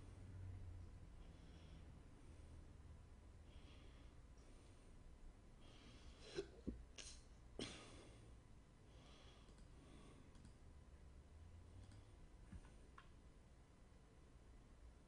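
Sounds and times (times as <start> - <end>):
soft breathing: 1.1 - 6.7, 7.6 - 10.6.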